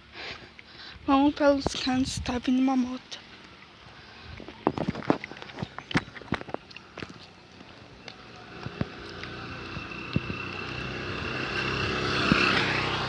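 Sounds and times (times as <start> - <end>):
motorcycle passing by: 7.4 - 13.0.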